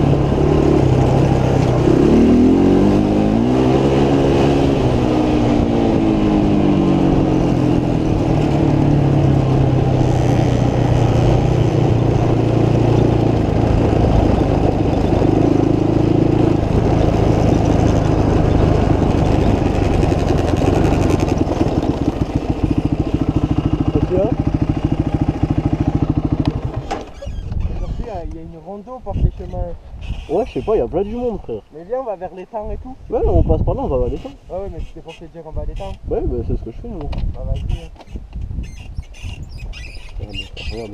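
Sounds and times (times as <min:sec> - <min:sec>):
motorcycle engine running: 0:00.0 - 0:26.9.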